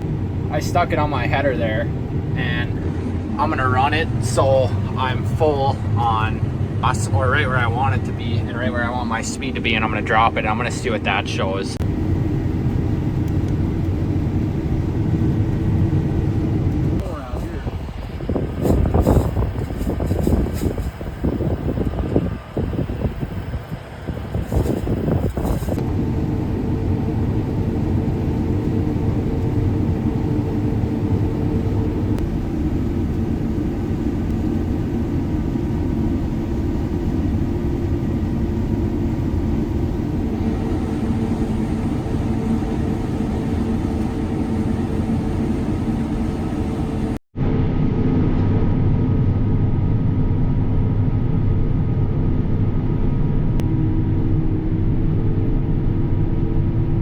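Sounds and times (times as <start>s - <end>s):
combine harvester engine hum: 0.0s - 57.0s.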